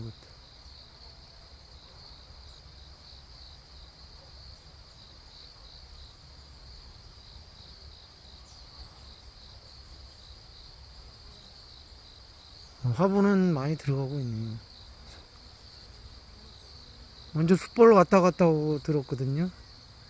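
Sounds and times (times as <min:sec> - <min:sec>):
cricket trilling: 0:00.0 - 0:20.0.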